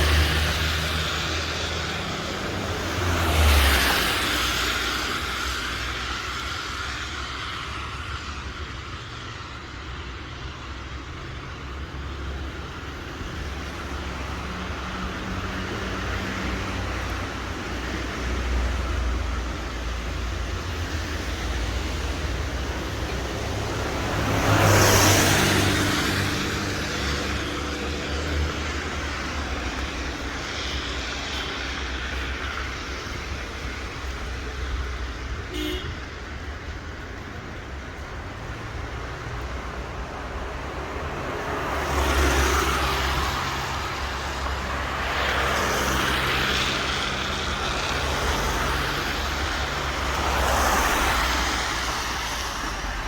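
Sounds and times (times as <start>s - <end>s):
road traffic noise: 0.0s - 53.0s
vehicle passing close: 20.9s - 34.9s.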